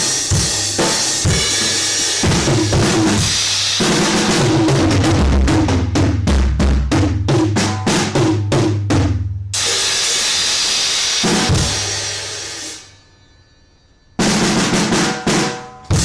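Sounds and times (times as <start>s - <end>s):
cymbal crash ringing: 0.0s - 4.5s, 9.6s - 16.0s
drum kit playing: 0.0s - 12.9s, 14.2s - 16.0s.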